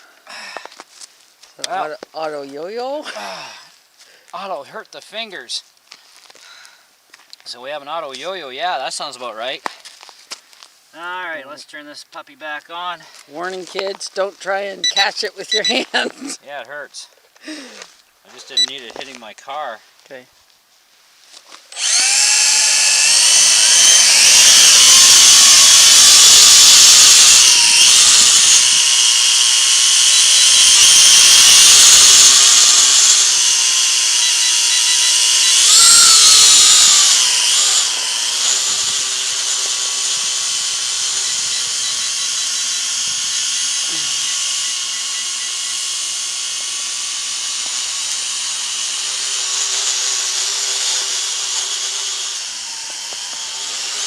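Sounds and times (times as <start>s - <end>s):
quadcopter motors buzzing whine: 21.7s - 54.0s.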